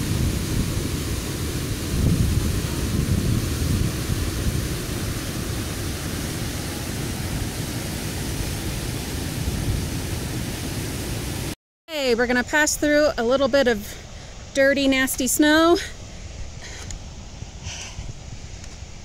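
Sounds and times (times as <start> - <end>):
wind buffeting microphone: 0.0 - 10.7, 15.2 - 19.0
waterfall roaring: 0.0 - 11.6.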